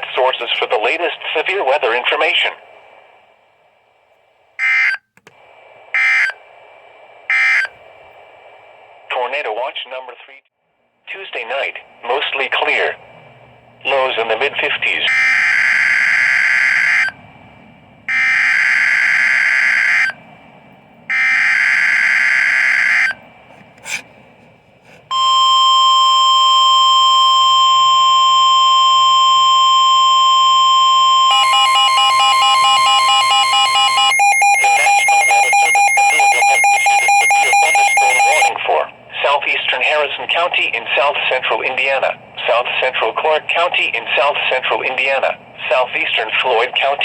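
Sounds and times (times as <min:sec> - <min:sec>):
steady weather radio warning tone: 0:04.6 - 0:10.4, 0:11.1 - 0:13.2, 0:13.8 - 0:17.2, 0:24.9 - 0:47.0
digital header data bursts: 0:31.2 - 0:38.5.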